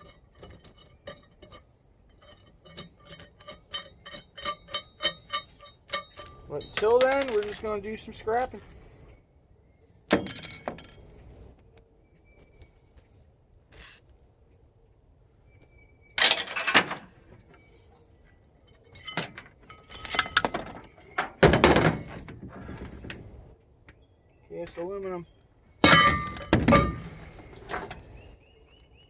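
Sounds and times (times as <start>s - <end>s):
scrap metal clanking: 0.0s - 8.8s, 18.7s - 23.4s, 25.8s - 28.3s.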